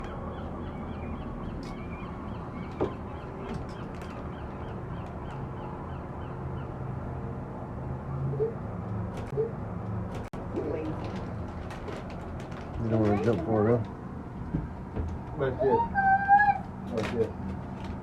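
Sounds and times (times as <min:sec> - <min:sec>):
seagulls calling: 0:00.0 - 0:07.0, 0:15.4 - 0:16.8
outdoor background noise: 0:00.0 - 0:18.0.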